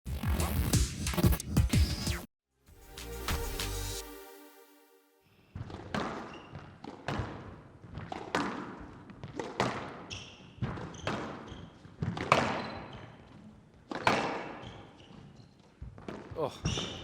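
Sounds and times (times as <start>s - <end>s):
racket striking squash ball: 5.6s - 15.3s
ball hitting court walls: 5.6s - 17.0s
shoe squeaks: 6.2s - 6.8s, 10.0s - 13.5s, 14.1s - 15.8s, 16.4s - 17.0s.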